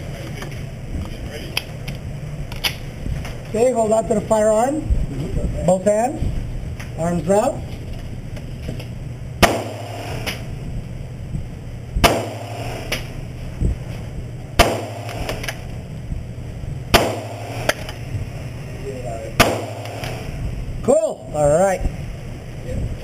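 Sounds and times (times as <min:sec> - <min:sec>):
low hum: 0:00.0 - 0:23.0
pistol shots: 0:09.4 - 0:10.5, 0:12.0 - 0:13.1, 0:14.6 - 0:15.7, 0:16.9 - 0:18.0, 0:19.4 - 0:20.4.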